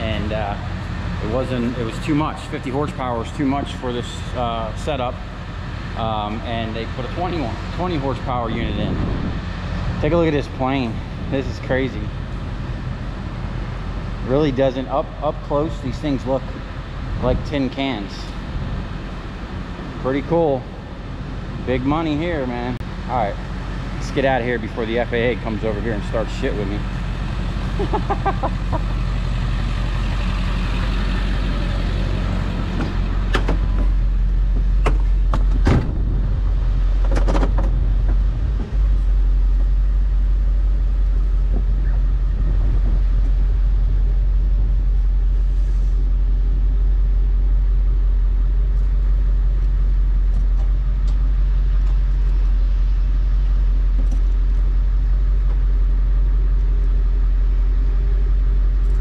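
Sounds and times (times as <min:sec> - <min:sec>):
vehicle engine and road rumble: 0:00.0 - 0:59.0.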